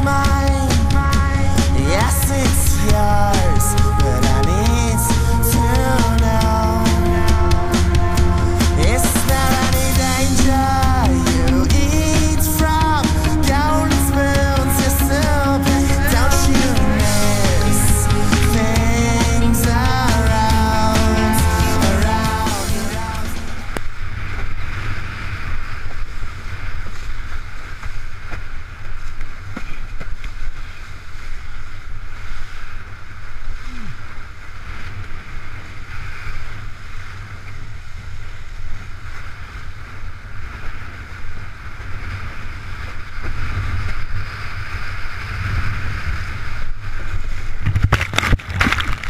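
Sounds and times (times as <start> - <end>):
water rushing past board: 39.1 - 49.0.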